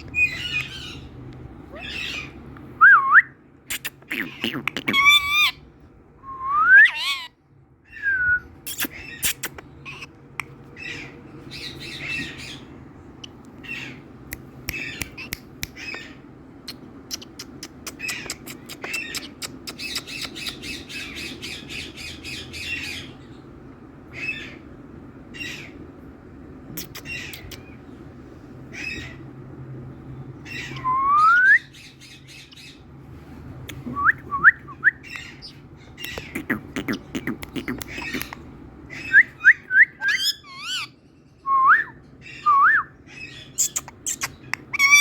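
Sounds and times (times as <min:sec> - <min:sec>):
parakeet squawks and chatter: 0:00.0 - 0:02.6, 0:03.6 - 0:05.9, 0:06.9 - 0:08.0, 0:08.6 - 0:23.5, 0:24.1 - 0:26.0, 0:26.6 - 0:29.6, 0:30.2 - 0:31.0, 0:31.6 - 0:33.9, 0:35.0 - 0:41.4, 0:42.0 - 0:45.0
parakeet rising whistles: 0:30.6 - 0:31.8.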